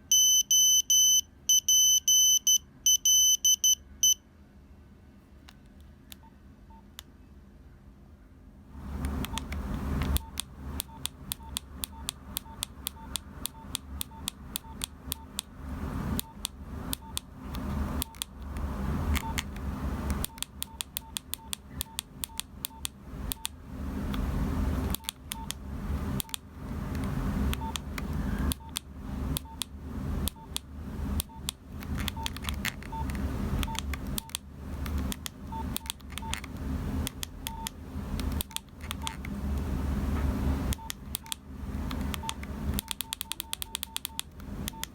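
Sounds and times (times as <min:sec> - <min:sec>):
phone keypad beeps with clicks: 0:00.1 - 0:04.2, 0:09.3 - 0:15.5, 0:16.2 - 0:17.3, 0:18.0 - 0:18.4, 0:19.2 - 0:19.5, 0:20.2 - 0:23.6, 0:24.9 - 0:25.6, 0:27.6 - 0:34.4, 0:35.1 - 0:36.5, 0:37.1 - 0:37.8, 0:40.7 - 0:41.4, 0:42.1 - 0:44.9.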